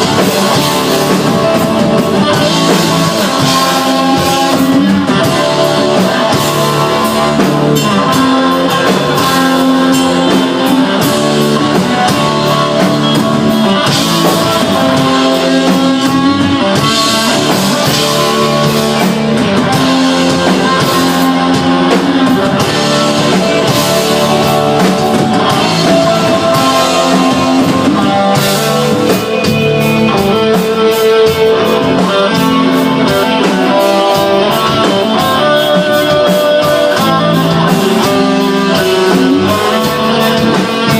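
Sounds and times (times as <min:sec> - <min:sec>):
bass guitar: 0:00.0 - 0:40.9
drum kit beat: 0:00.0 - 0:40.9
electric guitar: 0:00.0 - 0:40.9.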